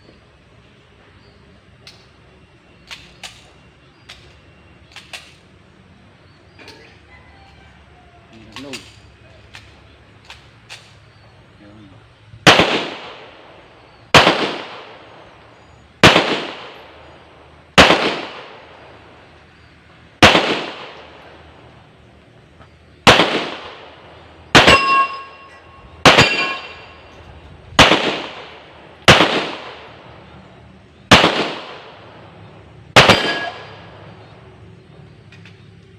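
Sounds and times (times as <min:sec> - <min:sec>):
pistol shots with echo: 0:12.4 - 0:19.3, 0:20.2 - 0:21.8, 0:23.0 - 0:34.4.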